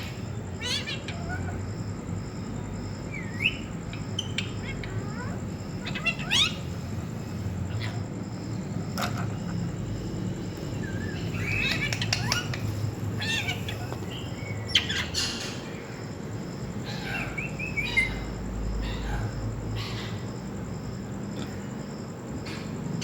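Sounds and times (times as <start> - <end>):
parrot chirping and squawking: 0.0 - 1.8, 3.1 - 8.2, 10.7 - 16.0, 16.7 - 20.3
steady low hum: 0.0 - 23.0.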